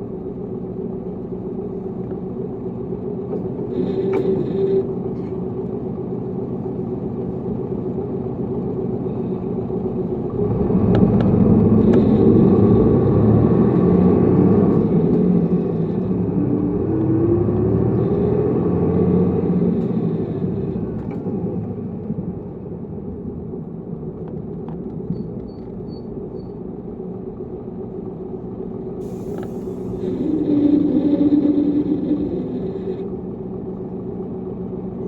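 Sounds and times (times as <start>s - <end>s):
bus engine running: 0.0s - 35.0s
brief hiss of air: 29.0s - 30.4s.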